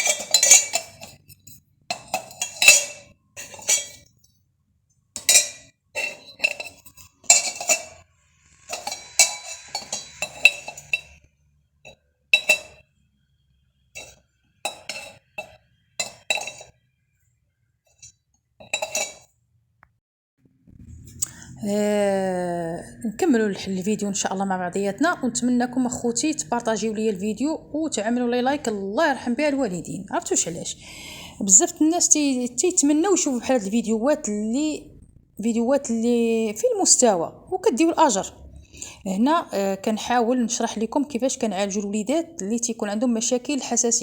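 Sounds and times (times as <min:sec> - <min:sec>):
metal tools clinking together: 0:00.0 - 0:01.3, 0:01.9 - 0:04.0, 0:05.2 - 0:08.0, 0:08.7 - 0:11.2, 0:18.6 - 0:19.2.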